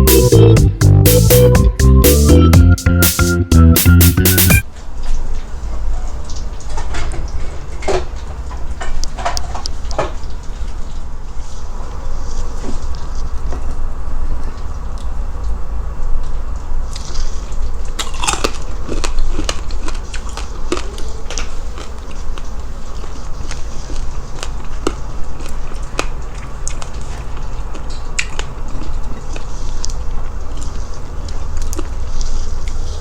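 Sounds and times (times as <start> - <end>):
crunchy chewing of fried food: 5.0 - 15.3, 16.2 - 33.0.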